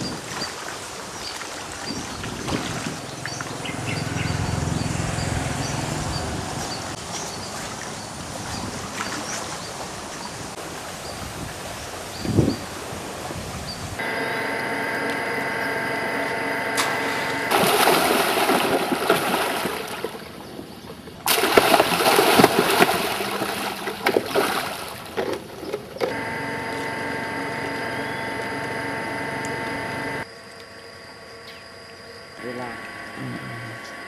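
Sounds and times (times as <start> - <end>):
water splashing loudly: 0.2 - 3.9, 16.8 - 20.4, 21.3 - 25.6
small engine droning: 3.0 - 8.1, 14.0 - 18.0, 26.0 - 30.3, 32.3 - 34.0.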